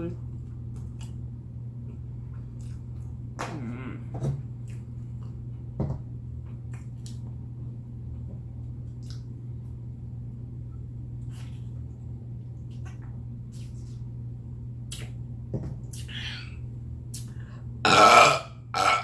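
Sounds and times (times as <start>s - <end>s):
steady low hum: 0.0s - 19.0s
mouth chewing and smacking: 0.5s - 1.2s, 1.9s - 3.2s, 4.6s - 5.5s, 6.5s - 7.3s, 8.8s - 9.4s, 14.8s - 15.2s, 15.8s - 16.3s.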